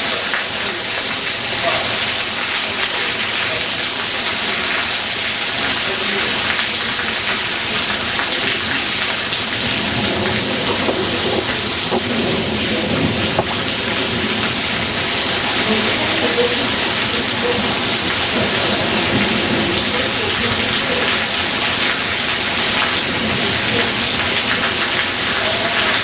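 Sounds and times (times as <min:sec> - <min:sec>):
heavy rain hissing: 0:00.0 - 0:26.0
thunder rumbling: 0:07.4 - 0:26.0.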